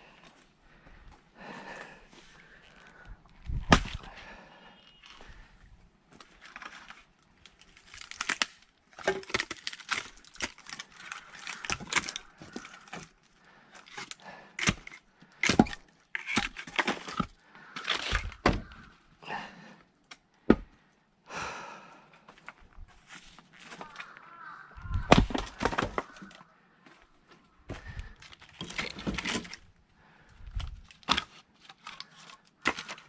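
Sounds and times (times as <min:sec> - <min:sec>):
wood cracking and tearing: 0:02.4 - 0:04.2, 0:06.1 - 0:19.0, 0:22.4 - 0:26.5, 0:27.7 - 0:33.0
axe strikes splitting firewood: 0:03.5 - 0:04.1, 0:13.9 - 0:18.7, 0:20.5 - 0:20.8, 0:25.0 - 0:26.1.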